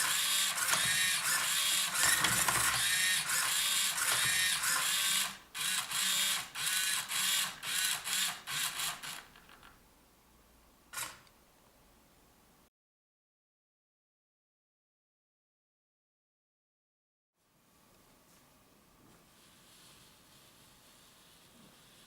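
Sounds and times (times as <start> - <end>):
small servo motors whining: 0.0 - 9.3.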